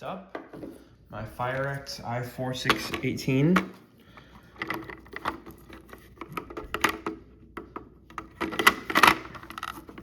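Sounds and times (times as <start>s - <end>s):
plastic clicks and knocks: 4.6s - 10.0s.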